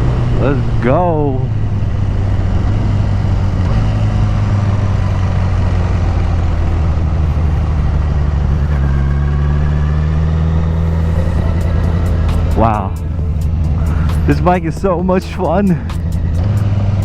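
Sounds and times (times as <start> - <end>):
motorcycle engine running: 0.0 - 17.0
wind rush: 1.5 - 15.2.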